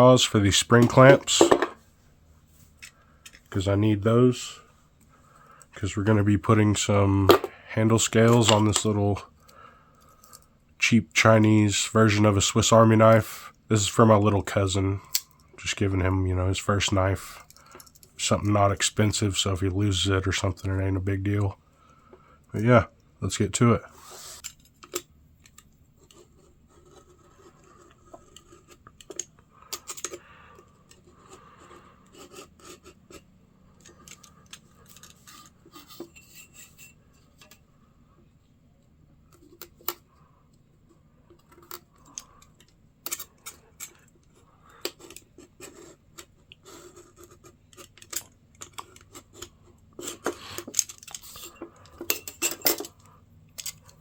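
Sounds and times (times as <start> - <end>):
rubbing and scraping: 23.9 - 24.5, 25.9 - 37.6, 40.8 - 54.0
small metal clicks and clinks: 50.6 - 54.0.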